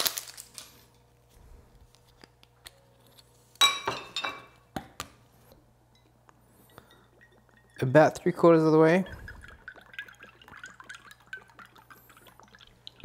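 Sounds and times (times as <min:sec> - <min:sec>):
glassware clinking: 0:03.6 - 0:04.6, 0:05.9 - 0:11.6.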